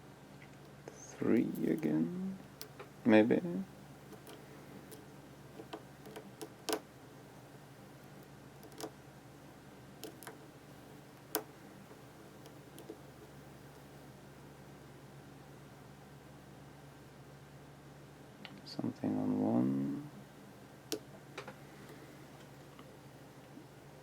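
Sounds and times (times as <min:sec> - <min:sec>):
lock pick clicking in padlock: 0:08.6 - 0:08.9.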